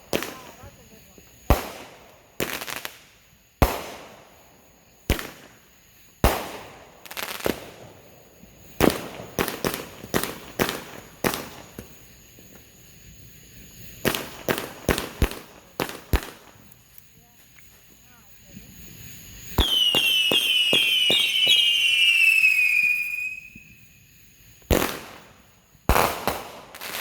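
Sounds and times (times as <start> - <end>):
firework bangs echoing: 14.0 - 16.7, 19.4 - 23.7, 24.6 - 27.0.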